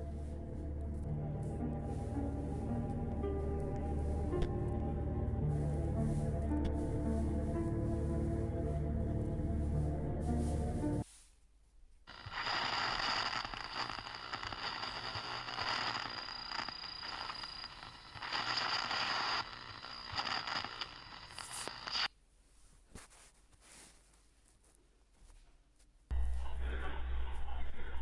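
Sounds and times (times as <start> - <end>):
music: 0.0 - 11.1, 26.1 - 28.0
crackling hissing noise: 0.0 - 11.4, 12.0 - 22.1.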